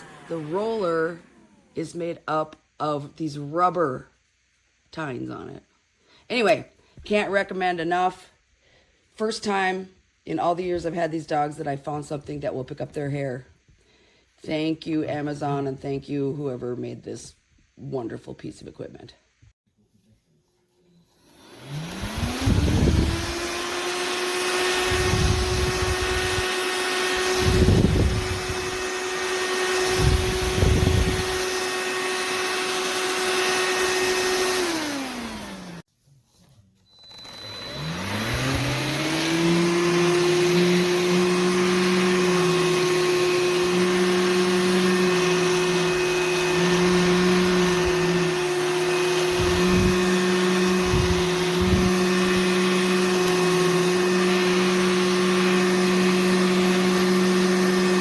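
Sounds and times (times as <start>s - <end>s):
handheld vacuum motor whine: 0.0s - 2.1s, 20.8s - 35.9s, 36.9s - 58.0s.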